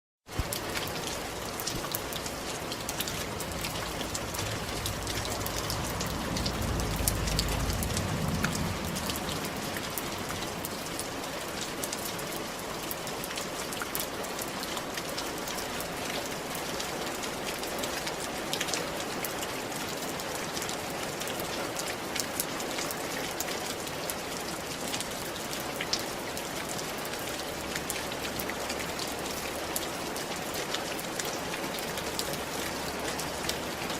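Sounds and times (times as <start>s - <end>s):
rain pattering: 0.2s - 33.9s
low rumble: 2.8s - 11.4s.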